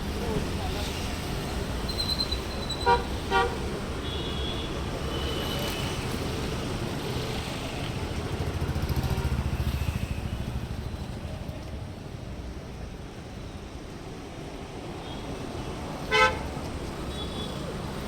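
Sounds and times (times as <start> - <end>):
street traffic rumbling: 0.0 - 18.0
vehicle horn toots: 2.7 - 5.4, 16.1 - 16.4.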